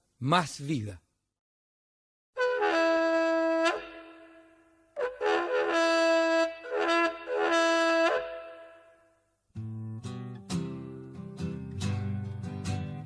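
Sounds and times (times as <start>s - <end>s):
horn-like wind instrument blasts: 2.4s - 9.2s.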